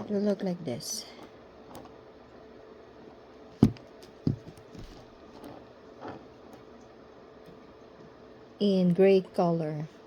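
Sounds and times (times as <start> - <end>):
faint steady hum: 0.0 - 10.0
sharp handling knocks: 3.6 - 5.0.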